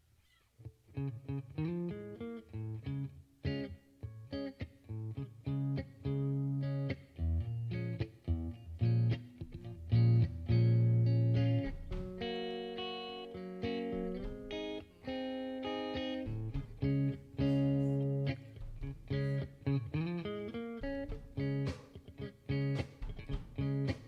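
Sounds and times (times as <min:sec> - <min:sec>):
guitar-led instrumental music: 0:00.6 - 0:24.0.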